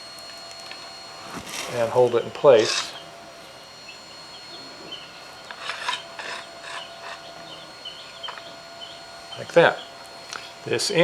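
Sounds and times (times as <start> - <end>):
metal tube scraping in tube: 2.6 - 3.0, 5.5 - 7.3.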